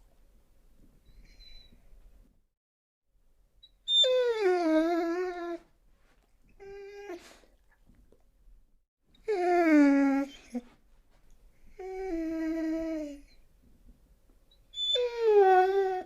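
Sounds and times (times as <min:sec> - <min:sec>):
dog whining: 0:03.6 - 0:05.6, 0:06.6 - 0:07.4, 0:09.2 - 0:10.7, 0:11.7 - 0:13.5, 0:14.5 - 0:16.0.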